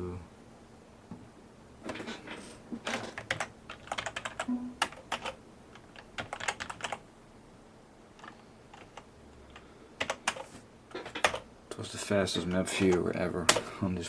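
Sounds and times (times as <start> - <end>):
keyboard typing: 3.2 - 7.0, 8.2 - 11.4.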